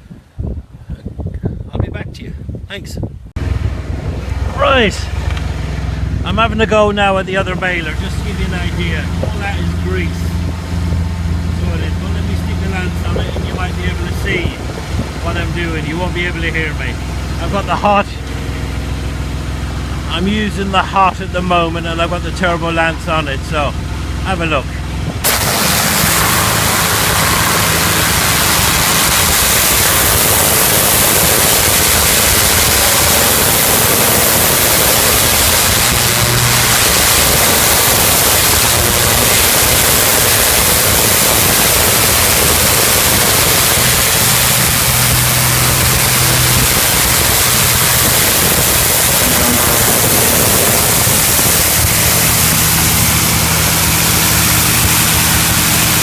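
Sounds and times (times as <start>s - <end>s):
washer engine humming: 3.3s - 56.0s
pressure washer water jet hissing: 25.2s - 56.0s.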